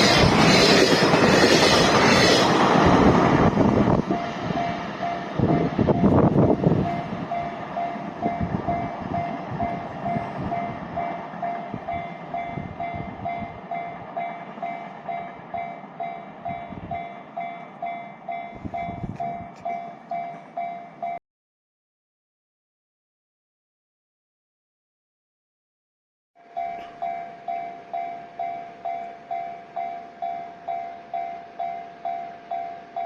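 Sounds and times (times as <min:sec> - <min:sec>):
level crossing warning bell: 0:04.1 - 0:21.2, 0:26.4 - 0:33.0.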